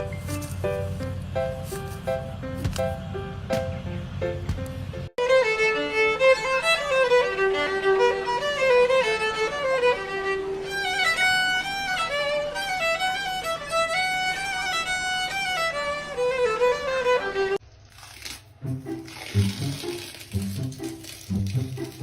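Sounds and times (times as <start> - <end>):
solo fiddle melody: 5.2 - 17.6.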